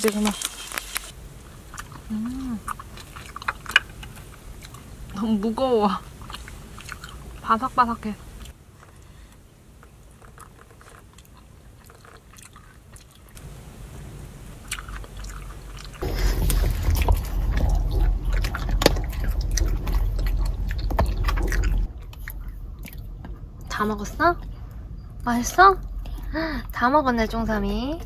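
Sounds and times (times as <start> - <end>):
crunchy chewing: 0.1 - 5.2, 6.0 - 7.5, 8.3 - 13.5, 14.6 - 23.5.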